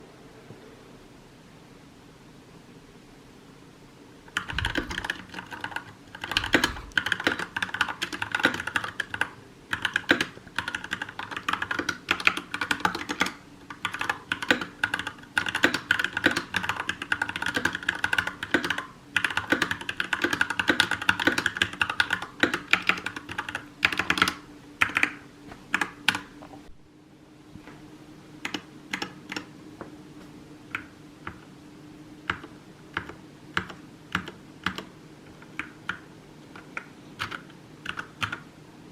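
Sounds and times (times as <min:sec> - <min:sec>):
mechanical keyboard typing: 0:04.3 - 0:26.3, 0:28.4 - 0:29.5, 0:32.2 - 0:38.5.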